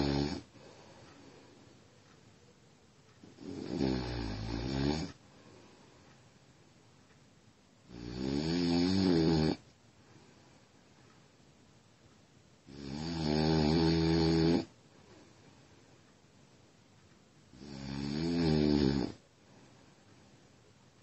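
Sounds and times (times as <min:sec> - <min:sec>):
person snoring: 0:00.0 - 0:00.5, 0:03.3 - 0:05.2, 0:07.9 - 0:09.6, 0:12.7 - 0:14.7, 0:17.6 - 0:19.2.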